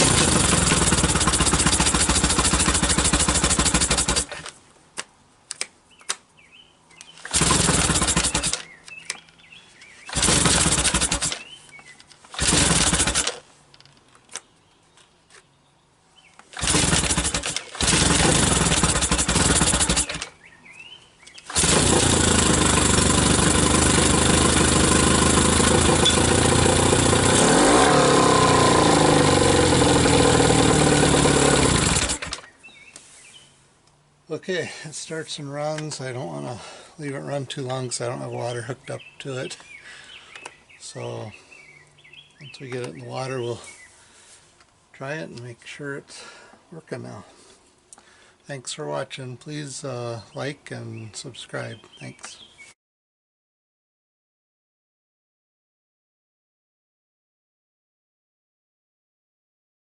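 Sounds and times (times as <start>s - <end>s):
outboard motor running: 0.0s - 4.3s, 7.3s - 8.6s, 10.1s - 11.4s, 12.3s - 13.4s, 16.6s - 20.3s, 21.5s - 32.4s.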